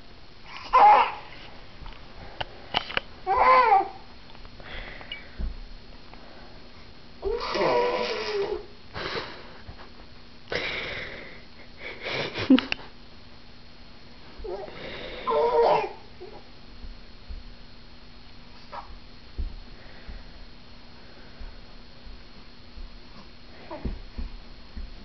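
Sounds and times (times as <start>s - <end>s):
baby blowing raspberries: 7.3s - 8.7s.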